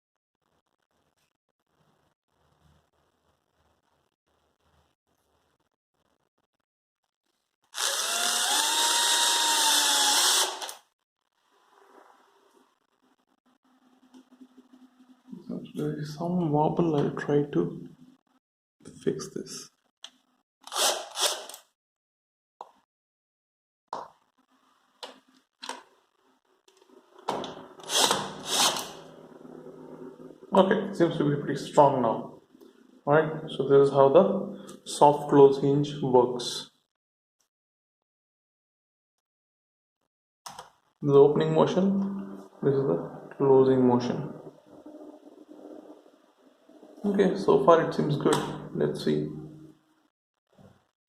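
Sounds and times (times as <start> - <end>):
drill driving screw into board: 7.7 - 10.9, 20.6 - 21.7, 27.8 - 29.0.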